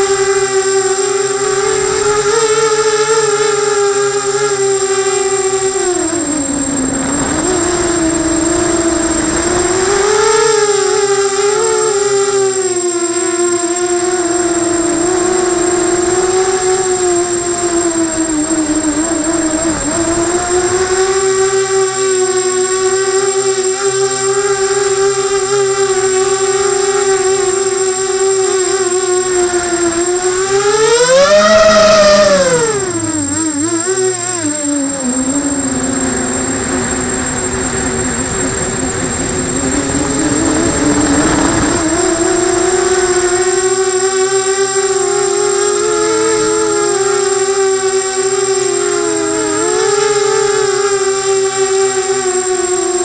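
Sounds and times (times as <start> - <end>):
quadcopter motors whining: 0.0 - 53.0
rushing noise: 5.9 - 11.0, 14.7 - 23.0, 35.1 - 44.0.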